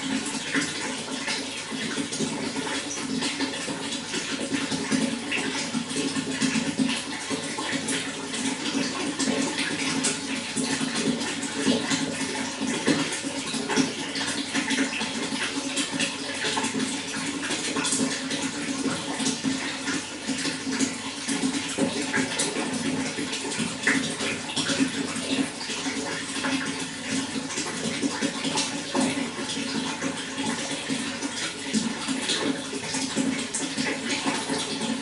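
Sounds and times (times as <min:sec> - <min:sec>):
running water splashing: 0:00.0 - 0:35.0.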